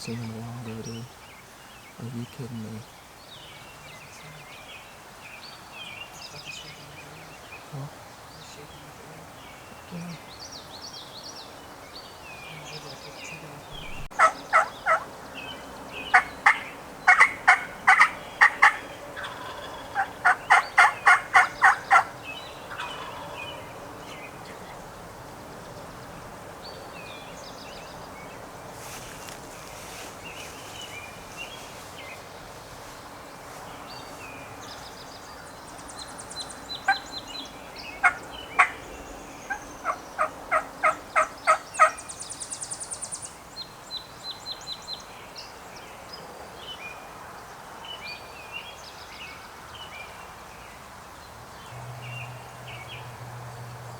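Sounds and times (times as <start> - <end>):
songbirds chirping faintly: 0.0 - 53.9
turkey yelping: 13.8 - 15.0, 16.1 - 23.6, 38.0 - 38.8, 39.5 - 42.0.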